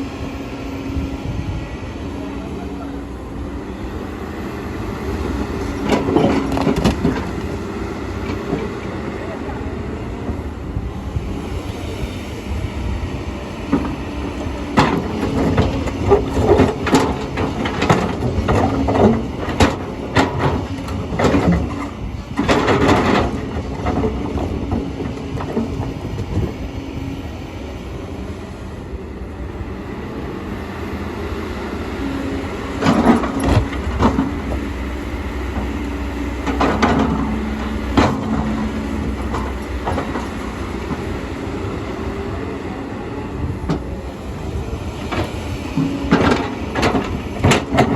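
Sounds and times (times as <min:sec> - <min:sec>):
excavator engine and hydraulics: 0:00.0 - 0:47.9
bucket clanking and rock clatter: 0:05.8 - 0:07.5, 0:14.7 - 0:26.3, 0:32.8 - 0:34.8, 0:36.4 - 0:41.0, 0:45.1 - 0:47.9.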